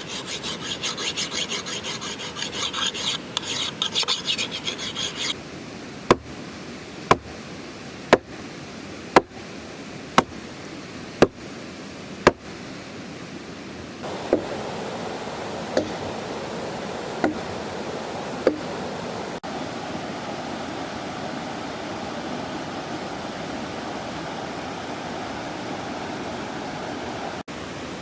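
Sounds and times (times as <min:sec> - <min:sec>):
sharp knocks: 0:06.1 - 0:06.3, 0:07.1 - 0:07.3
steady rushing noise: 0:14.0 - 0:20.3.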